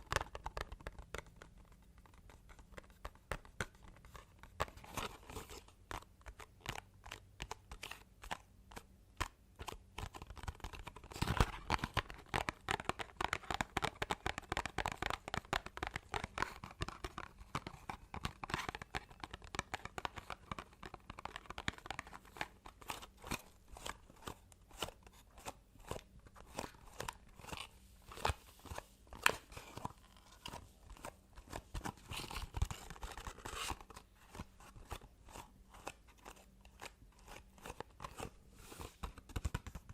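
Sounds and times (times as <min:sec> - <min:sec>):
fingers tapping on objects: 0:11.9 - 0:22.5.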